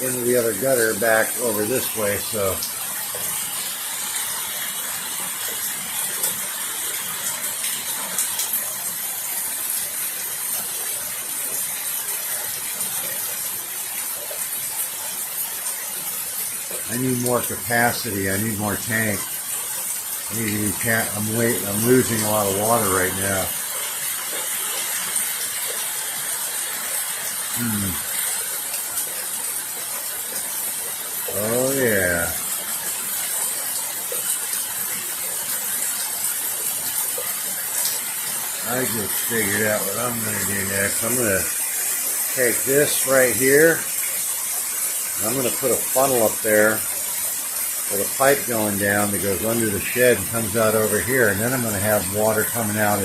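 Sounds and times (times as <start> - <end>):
heavy rain: 0.0 - 53.0
water drips ticking: 0.0 - 53.0
water pouring from a gutter: 0.0 - 53.0
man humming: 27.6 - 28.0.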